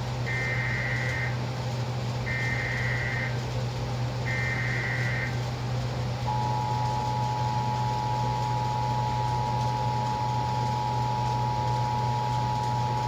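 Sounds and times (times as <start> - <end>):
low steady hum: 0.0 - 13.0
two-tone alarm signal: 0.3 - 1.4, 2.3 - 3.4, 4.2 - 5.4, 6.3 - 13.0.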